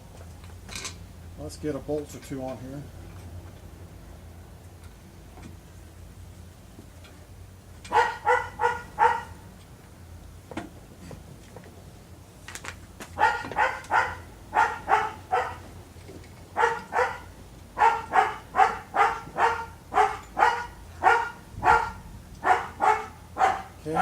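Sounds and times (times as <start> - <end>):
dog barking: 7.9 - 9.4, 13.2 - 15.7, 16.6 - 24.0.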